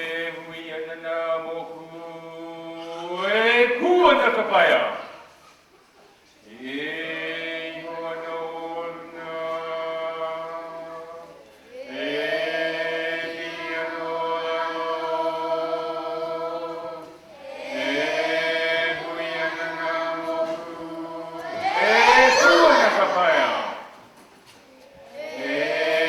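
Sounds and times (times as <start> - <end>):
man chanting: 0.0 - 5.1, 21.8 - 23.9.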